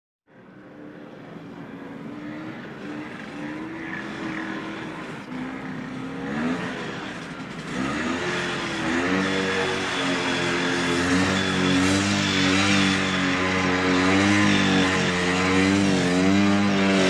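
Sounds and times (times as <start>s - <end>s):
atv engine revving: 0.7s - 17.0s.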